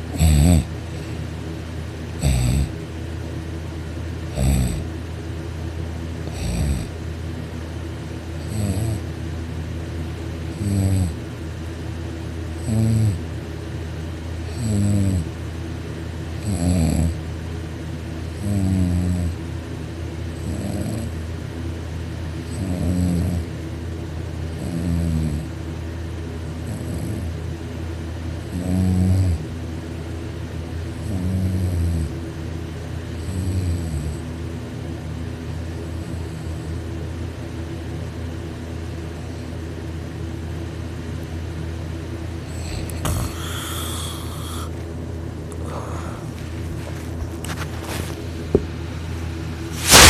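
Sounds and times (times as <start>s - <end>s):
steady low hum: 0.0s - 50.0s
man snoring loudly: 0.1s - 0.8s, 2.2s - 2.8s, 4.3s - 4.9s, 6.2s - 7.0s, 8.4s - 9.0s, 10.5s - 11.2s, 12.6s - 13.2s, 14.5s - 15.3s, 16.4s - 17.2s, 18.4s - 19.4s, 20.4s - 21.1s, 22.5s - 23.5s, 24.6s - 25.5s, 26.6s - 27.3s, 28.5s - 29.4s, 31.0s - 32.1s, 33.2s - 34.2s, 42.5s - 44.7s.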